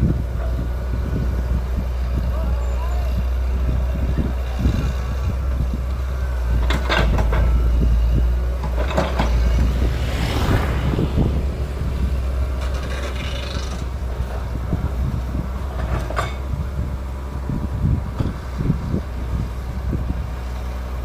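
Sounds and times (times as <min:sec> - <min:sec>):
excavator diesel engine running: 0:00.0 - 0:21.0
scraping and clattering of digging: 0:04.7 - 0:10.1, 0:11.6 - 0:16.7.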